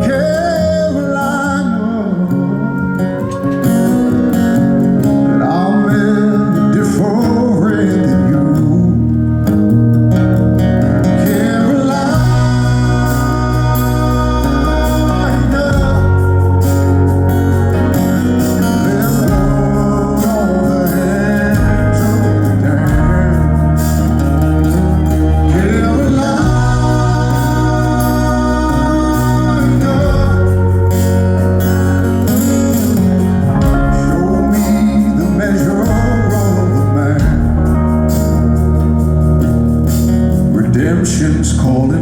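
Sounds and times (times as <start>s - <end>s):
bass notes: 0.0s - 42.0s
electric guitar: 0.0s - 42.0s
organ: 0.0s - 42.0s
drums and cymbals: 11.1s - 40.6s.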